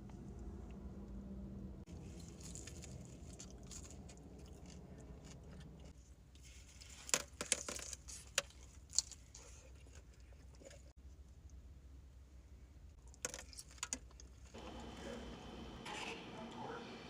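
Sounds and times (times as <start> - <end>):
soft chewing: 1.9 - 7.1, 7.9 - 11.6.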